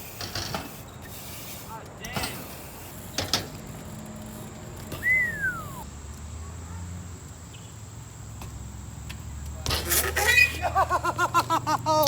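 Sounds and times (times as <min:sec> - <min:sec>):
bike knocking against ramp: 0:03.1 - 0:03.7
falling squeak: 0:09.8 - 0:10.6.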